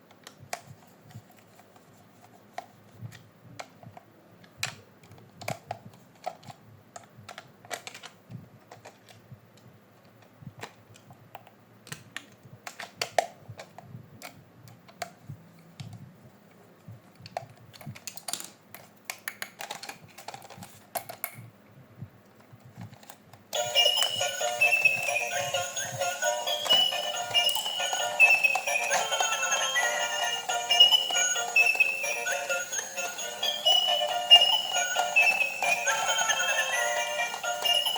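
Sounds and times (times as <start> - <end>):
plastic toy packaging clicks: 4.4 - 9.2, 10.0 - 15.2, 17.2 - 21.4
music with bell-like tones: 23.6 - 37.9.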